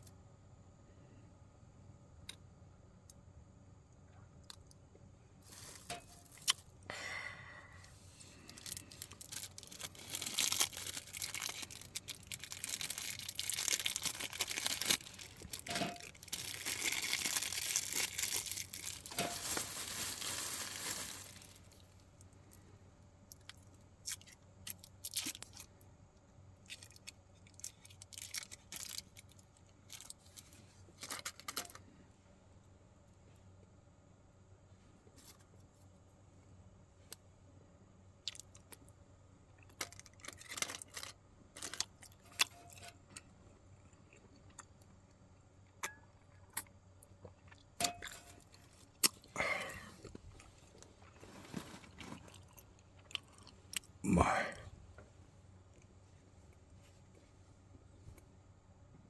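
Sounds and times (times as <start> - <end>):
packaging crinkling and tearing: 5.5 - 6.6, 8.5 - 21.9, 26.7 - 31.8, 39.9 - 42.5, 51.0 - 52.6.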